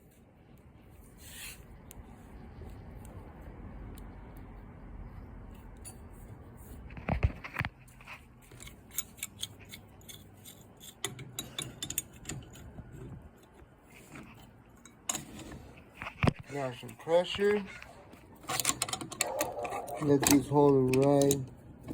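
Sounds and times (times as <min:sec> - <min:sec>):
metal tools clicking and clinking: 0:08.4 - 0:14.2, 0:18.4 - 0:21.9.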